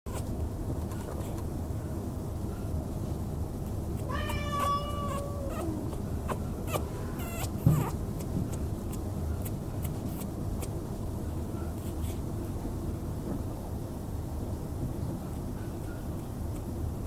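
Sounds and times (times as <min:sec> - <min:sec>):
kitten meowing: 0:04.0 - 0:08.0.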